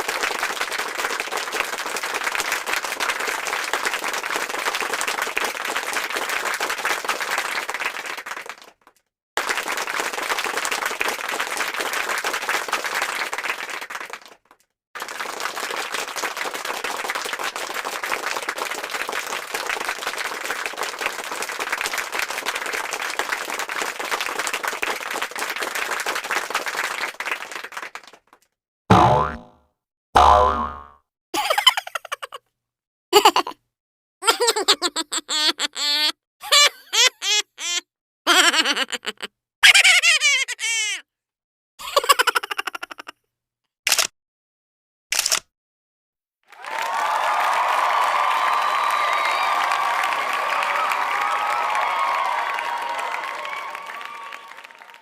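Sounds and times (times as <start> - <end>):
crowd clapping: 0.0 - 28.4, 46.5 - 55.0.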